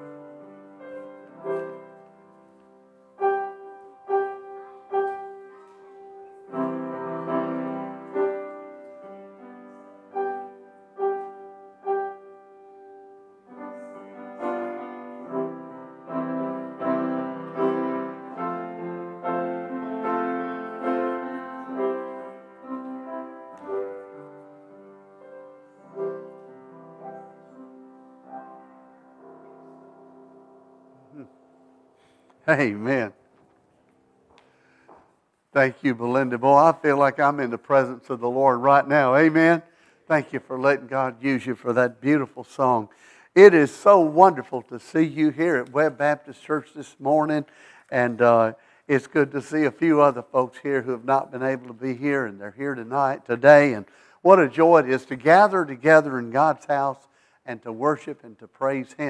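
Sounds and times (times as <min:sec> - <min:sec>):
slow chordal piano: 0:00.0 - 0:34.3.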